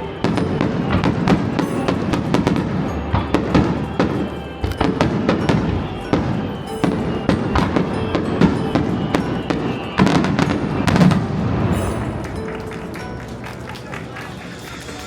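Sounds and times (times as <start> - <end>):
fireworks bangs and crackles: 0.0 - 15.0
music playing: 0.0 - 15.0.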